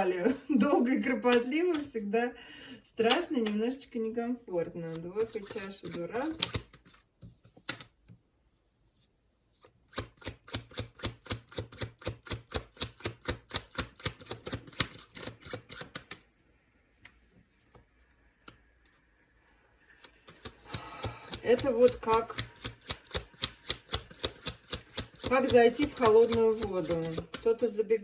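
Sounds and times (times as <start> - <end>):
cards being shuffled: 4.8 - 8.0, 20.1 - 27.6.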